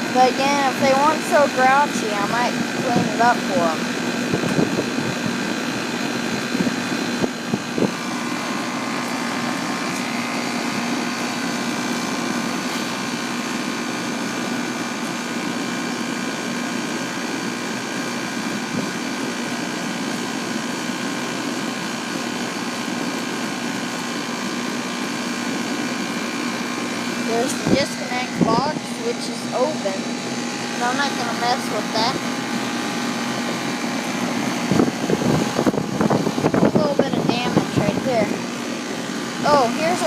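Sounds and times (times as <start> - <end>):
air conditioner fan whirring: 0.0 - 40.0.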